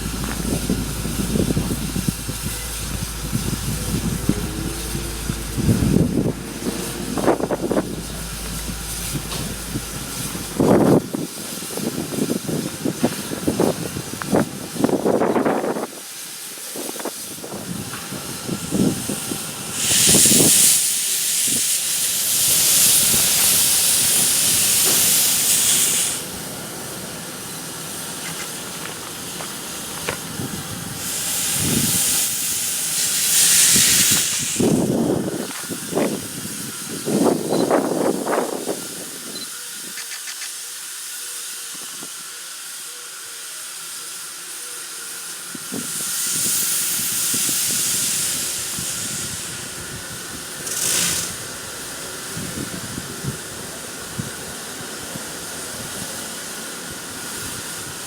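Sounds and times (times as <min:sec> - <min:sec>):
low hum: 0:00.0 - 0:11.3
steam hissing: 0:00.0 - 0:58.0.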